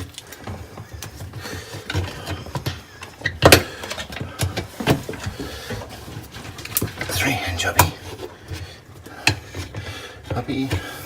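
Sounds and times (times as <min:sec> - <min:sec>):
plastic clicks and knocks: 0:00.0 - 0:07.1.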